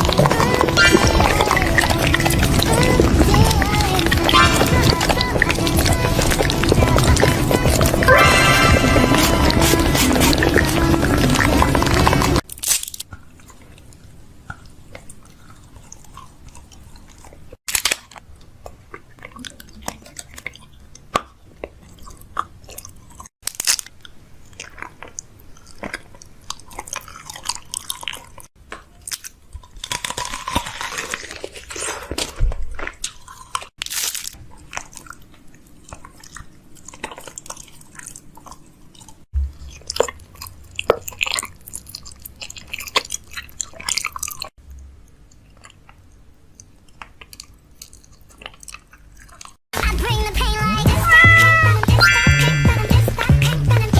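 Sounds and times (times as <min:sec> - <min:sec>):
chewing and crunching: 0:00.0 - 0:49.6.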